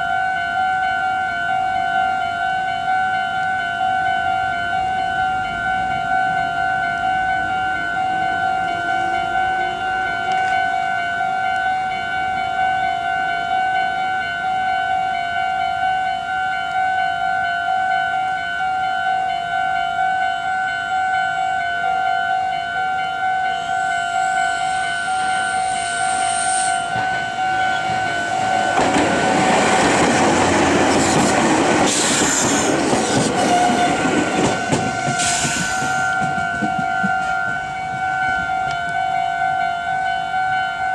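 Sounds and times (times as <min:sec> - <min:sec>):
electric train passing: 0:00.0 - 0:40.9
level-crossing alarm ringing: 0:00.0 - 0:40.9.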